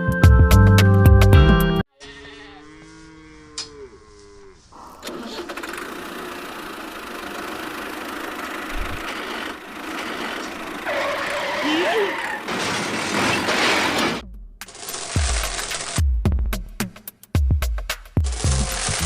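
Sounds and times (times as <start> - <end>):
music: 0.0 - 1.8, 14.2 - 19.0
animal bleating: 1.9 - 5.4, 10.8 - 12.4
steady noisy running sound: 5.6 - 10.9.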